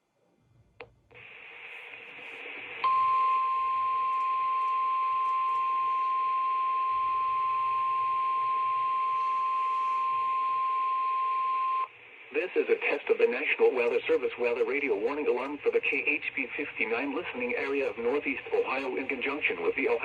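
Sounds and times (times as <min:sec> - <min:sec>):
radio static: 0:01.2 - 0:03.0, 0:05.1 - 0:10.7, 0:12.2 - 0:20.0
steady single-pitch alarm tone: 0:02.8 - 0:11.9.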